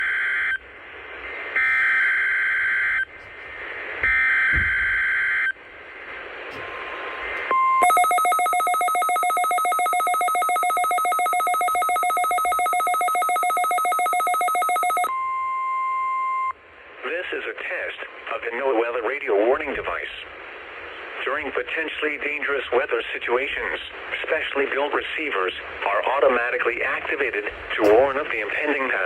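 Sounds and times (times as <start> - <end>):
pulsing two-tone attention signal: 6.6 - 15.7.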